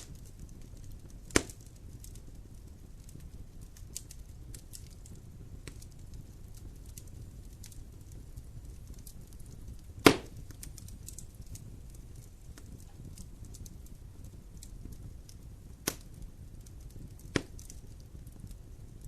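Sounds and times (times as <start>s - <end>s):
fire low rumble: 0.0s - 19.0s
wood fire crackling: 0.0s - 19.0s
loud fire pop: 1.3s - 1.7s, 9.8s - 11.2s, 15.8s - 16.2s, 17.0s - 17.7s.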